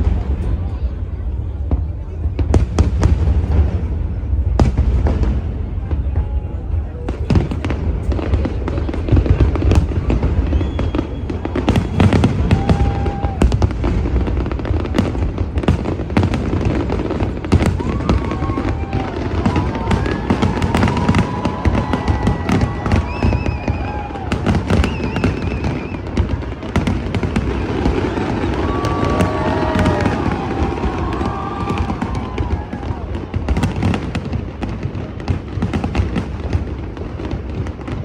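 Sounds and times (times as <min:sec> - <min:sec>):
fireworks bangs and crackling: 0:00.0 - 0:38.0
fireworks whistling: 0:07.2 - 0:36.8.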